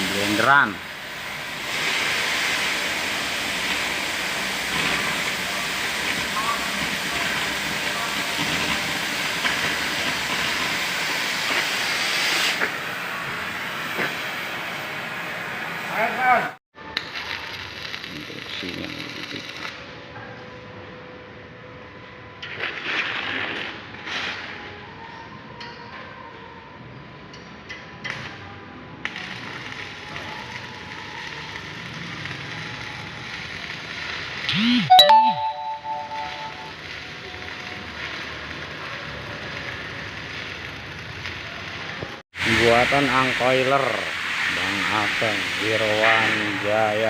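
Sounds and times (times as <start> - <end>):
arc welding hiss: 0.0 - 16.3, 17.0 - 19.8, 29.0 - 34.5, 36.8 - 47.0
steady mechanical hiss: 42.4 - 47.0.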